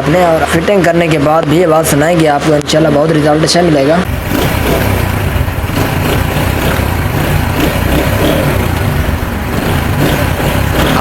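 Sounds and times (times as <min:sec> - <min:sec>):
motorcycle engine running: 0:04.0 - 0:11.0.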